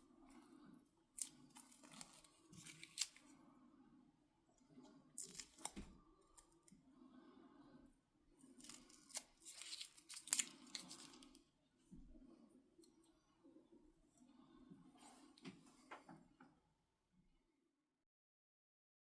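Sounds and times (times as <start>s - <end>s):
faint scraping and rustling: 0.0s - 16.6s.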